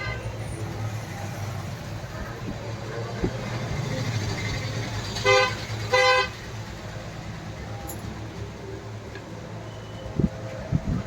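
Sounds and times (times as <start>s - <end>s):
road traffic hum: 0.0s - 11.0s
vehicle horn toots: 5.2s - 6.4s.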